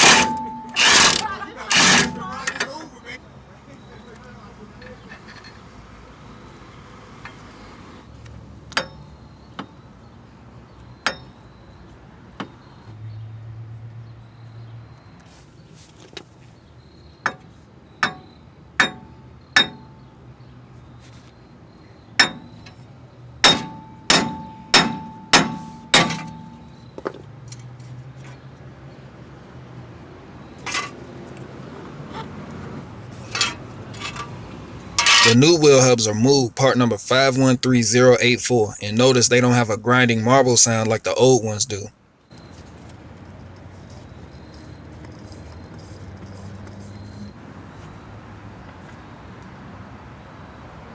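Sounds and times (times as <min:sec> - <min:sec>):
hammer blows on steel: 0:23.4 - 0:26.6.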